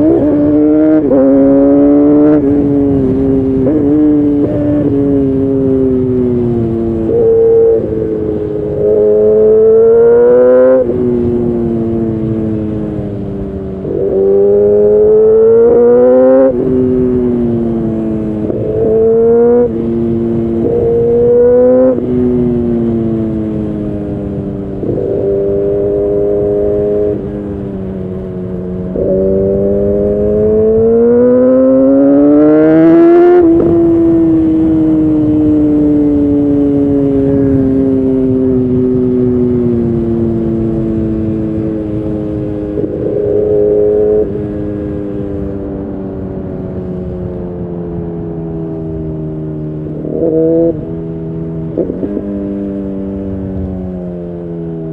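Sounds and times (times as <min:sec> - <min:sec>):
motorcycle engine accelerating: 0:00.0 - 0:54.9.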